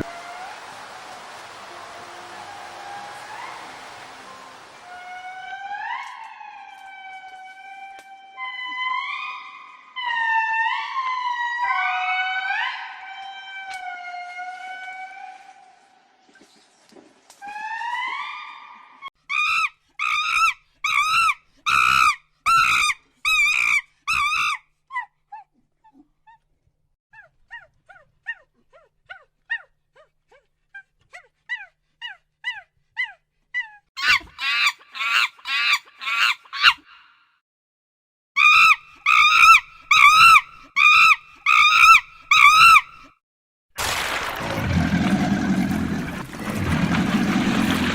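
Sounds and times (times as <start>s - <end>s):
animal high-pitched calls: 31.6s - 36.9s, 38.4s - 43.0s.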